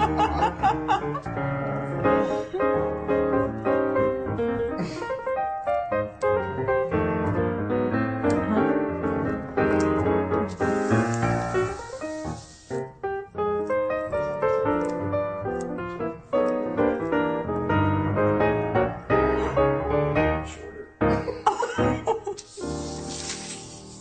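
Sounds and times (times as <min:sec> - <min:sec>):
piano music: 0:00.0 - 0:24.0
hiss: 0:10.5 - 0:12.9, 0:22.4 - 0:24.0.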